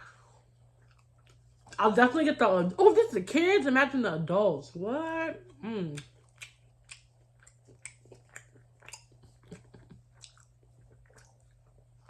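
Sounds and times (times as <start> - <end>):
close-up chewing: 0.1 - 1.9, 5.4 - 12.0.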